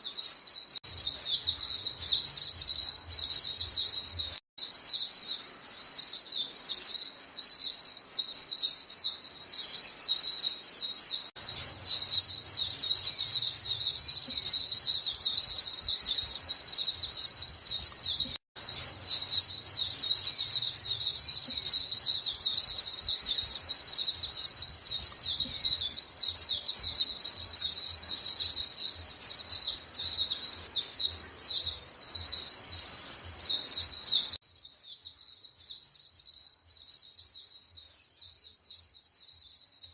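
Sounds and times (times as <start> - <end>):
flock of birds chirping: 0.0 - 39.9.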